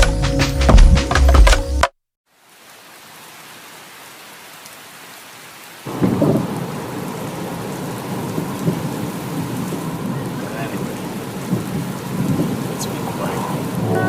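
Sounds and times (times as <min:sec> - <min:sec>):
steady rain: 0:02.3 - 0:14.0
thunder rumble: 0:05.9 - 0:14.0.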